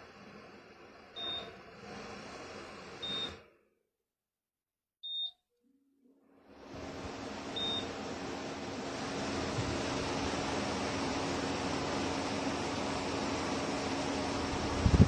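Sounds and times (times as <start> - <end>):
fan rushing air: 0.0 - 3.5, 6.4 - 15.0
low motor hum: 6.5 - 15.0.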